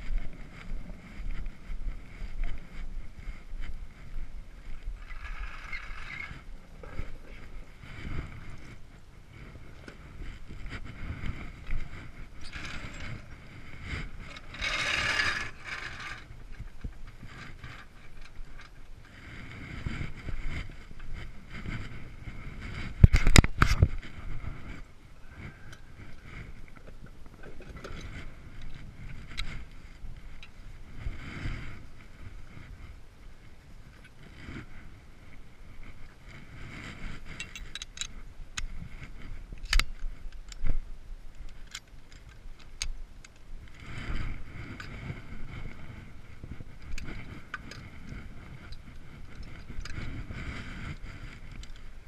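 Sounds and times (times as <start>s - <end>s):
metal scraping: 10.2s - 18.7s.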